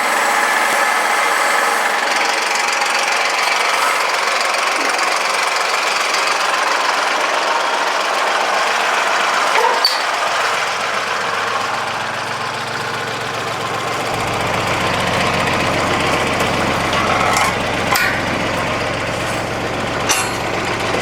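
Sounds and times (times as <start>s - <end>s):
engine running: 0.0s - 21.0s
sharp squeak: 9.6s - 10.1s.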